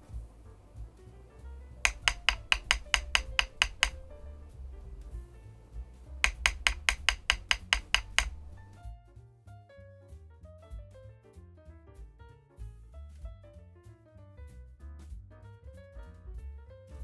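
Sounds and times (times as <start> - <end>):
mechanical keyboard typing: 1.8 - 5.0, 5.6 - 8.8.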